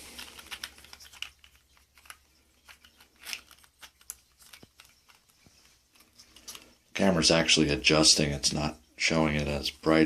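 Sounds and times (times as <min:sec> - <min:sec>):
handling clicks and rustles: 0:00.0 - 0:07.1.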